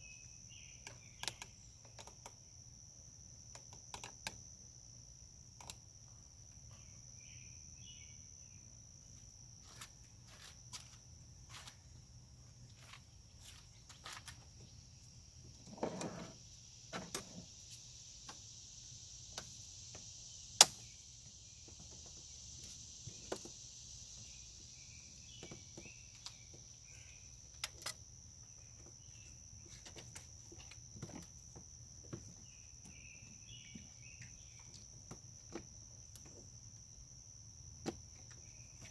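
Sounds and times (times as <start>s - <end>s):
crickets chirring: 0.0s - 38.9s
loud sharp click: 20.6s - 20.8s.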